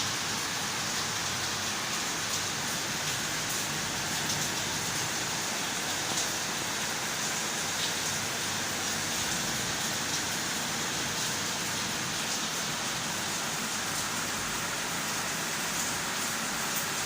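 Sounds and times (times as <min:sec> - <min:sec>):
steady rain: 0:00.0 - 0:17.0.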